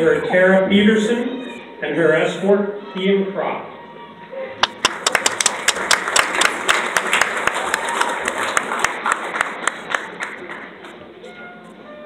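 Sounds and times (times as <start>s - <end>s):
sharp claps close by: 4.6s - 11.0s
audience applauding: 4.6s - 11.1s.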